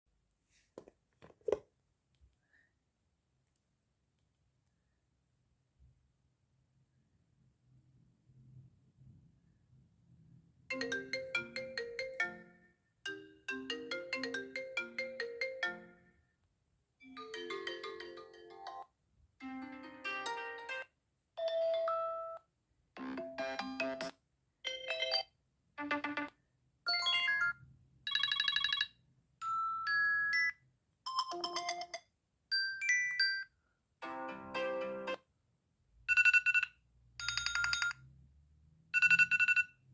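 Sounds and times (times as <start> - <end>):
phone ringtones: 26.9 - 30.5, 36.1 - 38.0, 39.0 - 39.7.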